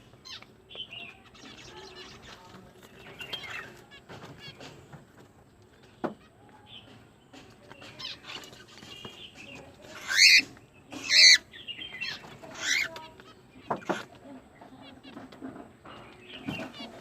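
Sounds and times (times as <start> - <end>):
cockatiel loud harsh calls: 10.0 - 14.1.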